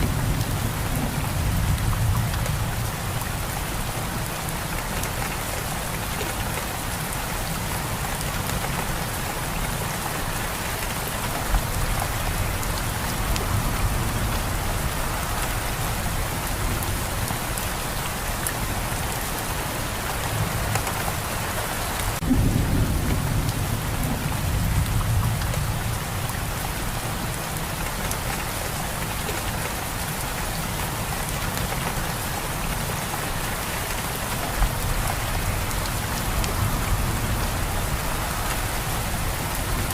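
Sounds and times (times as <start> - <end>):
rain pattering: 0.0 - 39.9
thunder rumble: 22.2 - 26.6.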